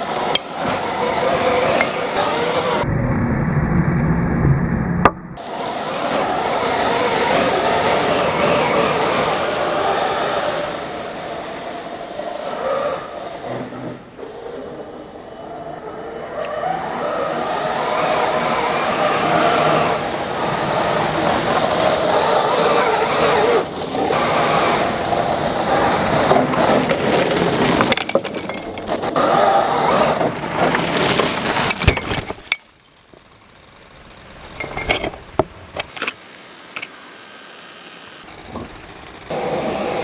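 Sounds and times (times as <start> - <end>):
rc car motor running: 0.0 - 2.8, 5.4 - 11.0, 35.9 - 39.0
tires sliding on dirt: 0.0 - 2.8, 5.4 - 40.0.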